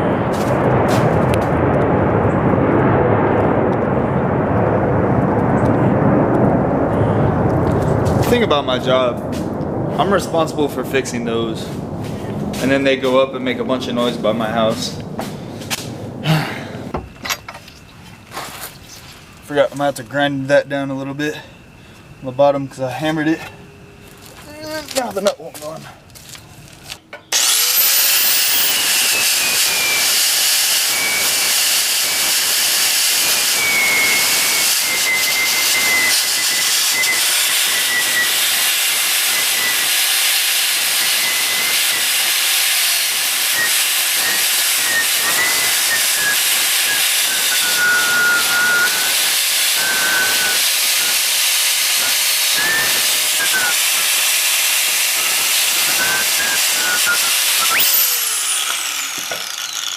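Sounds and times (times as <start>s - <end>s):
grinder grinding metal: 27.3s - 59.9s.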